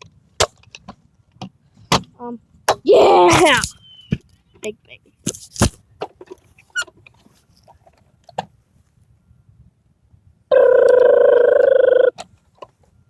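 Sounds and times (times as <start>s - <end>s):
faint clicks and rustles: 3.6s - 9.1s
loud steady buzzing tone: 10.5s - 12.2s.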